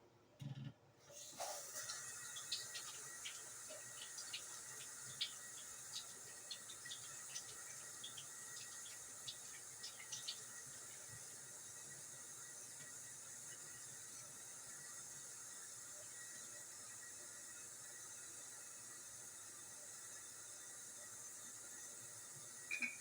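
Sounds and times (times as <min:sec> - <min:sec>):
tap water hissing: 0:01.1 - 0:23.0
water splashing and dripping: 0:01.3 - 0:11.4.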